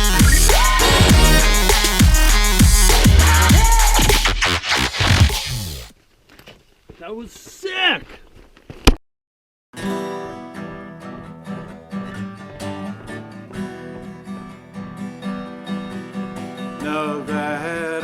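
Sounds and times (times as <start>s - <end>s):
person singing: 0.0s - 4.6s, 16.8s - 18.0s
strummed acoustic guitar: 9.8s - 18.0s.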